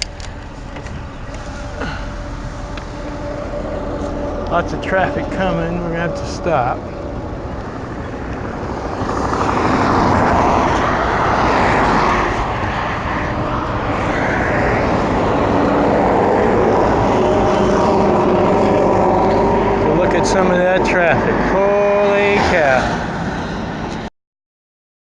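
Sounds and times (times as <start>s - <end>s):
highway traffic passing: 0.0s - 24.1s.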